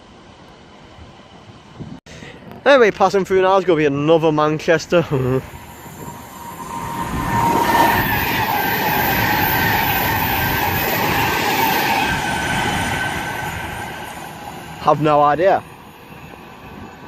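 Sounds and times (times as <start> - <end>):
electric train passing: 3.6 - 17.0.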